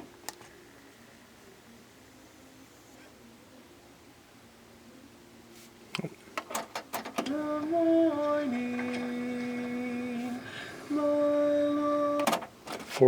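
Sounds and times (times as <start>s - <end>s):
music playing from tape: 0.0s - 13.0s
cassette deck clicks: 6.4s - 10.0s, 12.1s - 13.0s.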